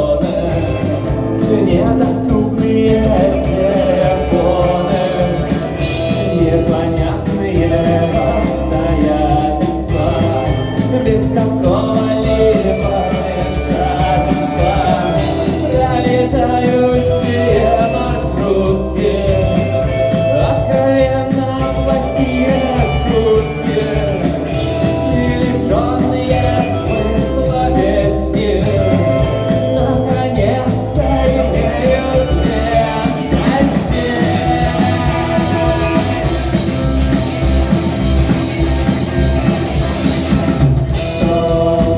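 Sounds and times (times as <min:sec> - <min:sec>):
rock song with singing: 0:00.0 - 0:41.9.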